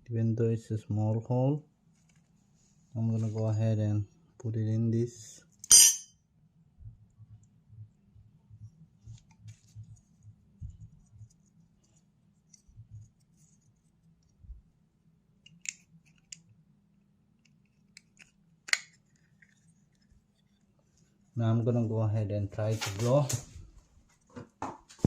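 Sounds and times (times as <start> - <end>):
soft low bumps: 7.8 - 11.3.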